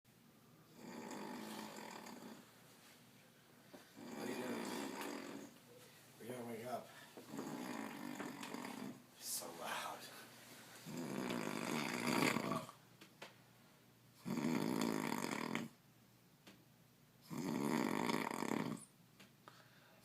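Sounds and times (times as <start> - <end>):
man snoring: 0.7 - 2.4, 4.0 - 5.5, 7.3 - 9.0, 10.8 - 12.8, 14.2 - 15.8, 17.3 - 18.9.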